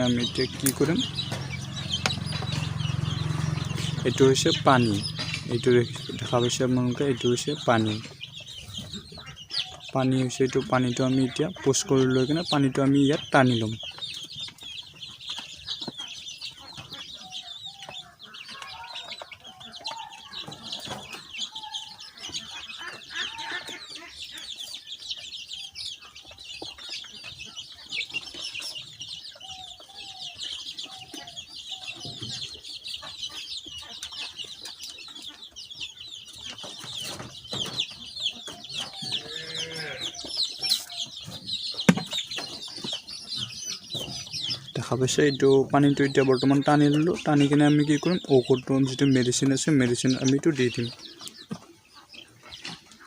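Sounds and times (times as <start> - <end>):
chicks peeping: 0.0 - 53.0
lower chicken calls: 38.3 - 45.1.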